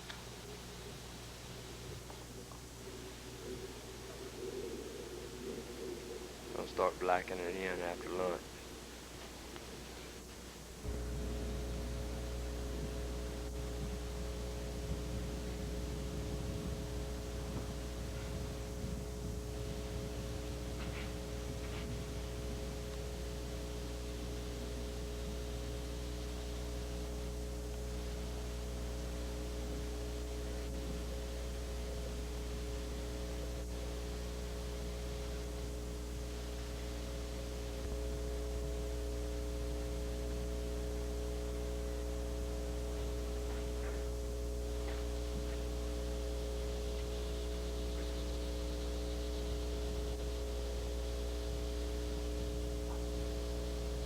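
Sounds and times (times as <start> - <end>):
faint ticks: 0.0 - 1.0
electrical hum: 0.0 - 54.0.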